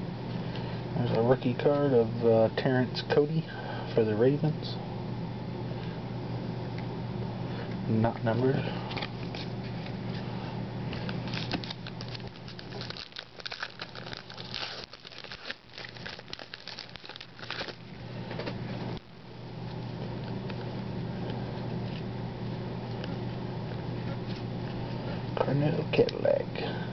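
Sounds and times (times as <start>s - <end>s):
low steady hum: 0.0s - 26.9s
wrapper crinkling and tearing: 11.1s - 18.0s.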